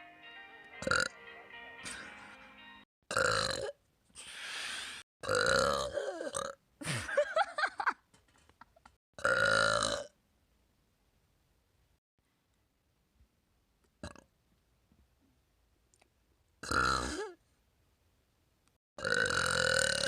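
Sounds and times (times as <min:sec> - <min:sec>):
woman burping loudly: 0:00.8 - 0:01.1, 0:03.1 - 0:03.8, 0:05.2 - 0:06.6, 0:09.2 - 0:10.1, 0:19.0 - 0:20.0.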